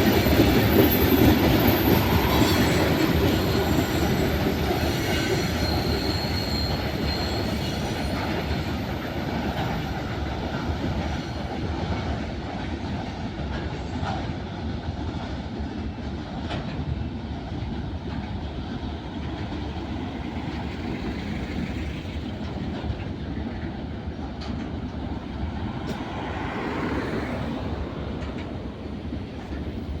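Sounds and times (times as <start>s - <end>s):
high wheel squeal: 0.0s - 12.2s
freight train wagons rolling: 0.0s - 30.0s
wheels clicking over rail joints: 0.0s - 30.0s.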